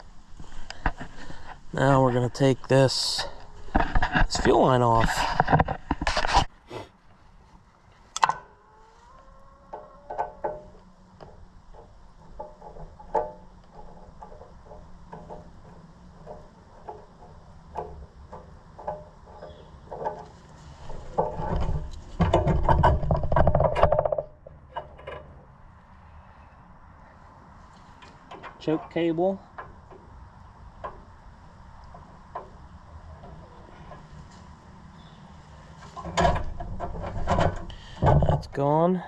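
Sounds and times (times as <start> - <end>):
clattering and rubbing: 0.0 - 8.1, 9.0 - 25.5, 35.4 - 38.6.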